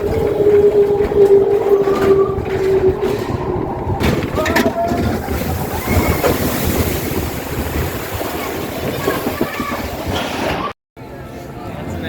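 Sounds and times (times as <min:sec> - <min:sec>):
low rumble: 0:00.0 - 0:09.1
wind noise on microphone: 0:00.0 - 0:10.7.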